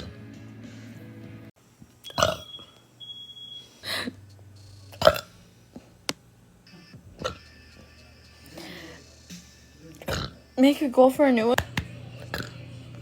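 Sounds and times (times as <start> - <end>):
woman burping: 2.1 - 2.5, 5.0 - 5.3.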